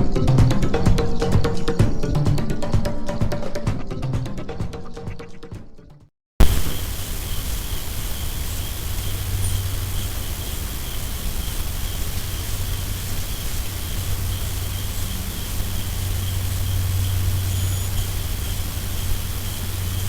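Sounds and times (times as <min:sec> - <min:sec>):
even hiss: 0:06.4 - 0:20.0
faint high-pitched buzz: 0:06.4 - 0:20.0
low hum: 0:06.4 - 0:20.0.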